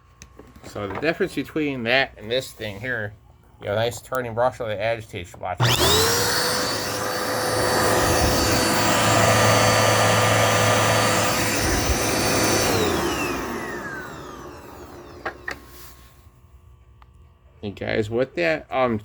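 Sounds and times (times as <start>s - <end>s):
vacuum motor spinning down: 5.6s - 15.9s
vacuum cleaner running: 5.6s - 16.2s.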